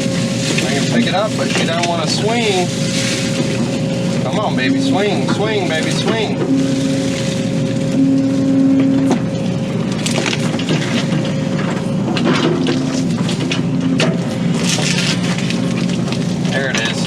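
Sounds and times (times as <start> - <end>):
excavator engine and hydraulics straining: 0.0 - 17.0
wood cracking and snapping: 9.8 - 17.0.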